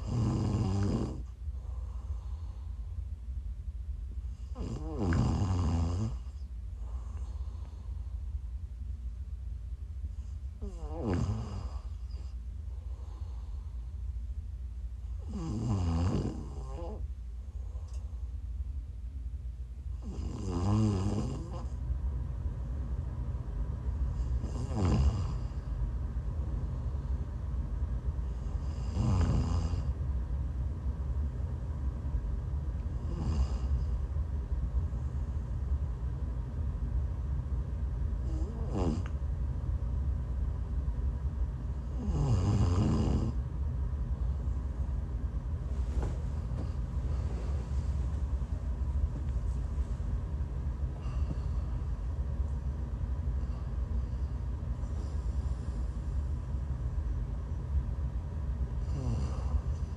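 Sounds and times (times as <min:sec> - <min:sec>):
woman snoring: 0:00.0 - 0:01.3, 0:04.4 - 0:06.3, 0:10.6 - 0:12.2, 0:15.2 - 0:17.0, 0:20.0 - 0:21.7, 0:24.2 - 0:25.6, 0:28.5 - 0:29.9, 0:33.0 - 0:33.9, 0:38.2 - 0:39.1, 0:41.9 - 0:43.4, 0:58.8 - 0:59.8
faint breaths: 0:00.0 - 0:05.3, 0:06.0 - 0:08.6, 0:09.8 - 0:15.6, 0:44.1 - 0:57.7, 0:58.5 - 0:59.9
steady low rumble: 0:00.0 - 0:20.2, 0:21.1 - 0:59.9.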